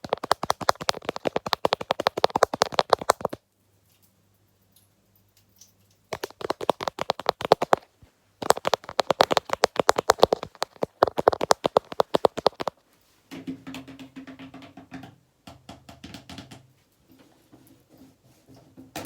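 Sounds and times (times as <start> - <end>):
fast sharp tapping: 0.0 - 3.4, 6.1 - 12.8.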